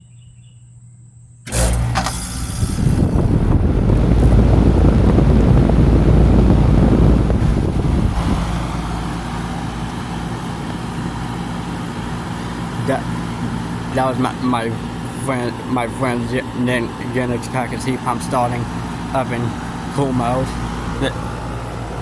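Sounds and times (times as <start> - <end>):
rushing air: 1.5 - 12.5
heat pump humming: 1.5 - 22.0.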